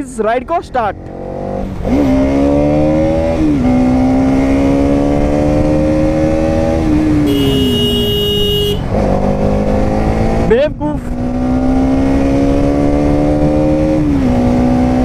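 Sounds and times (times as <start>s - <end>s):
motorcycle engine accelerating: 0.3s - 15.0s
steady horn-like tone: 7.3s - 8.8s.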